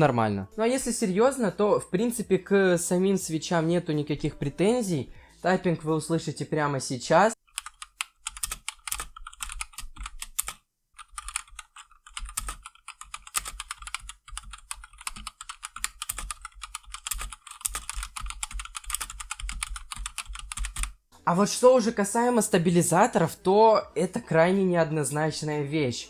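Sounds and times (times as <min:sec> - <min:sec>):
mechanical keyboard typing: 0:07.5 - 0:21.0.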